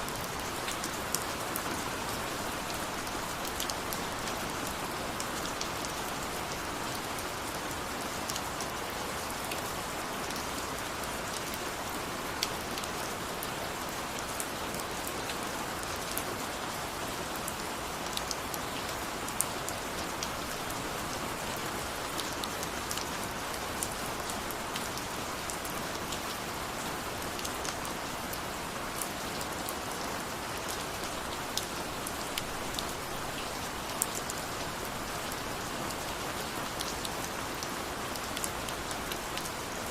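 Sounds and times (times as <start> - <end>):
raindrops ticking on a surface: 0.0 - 39.9.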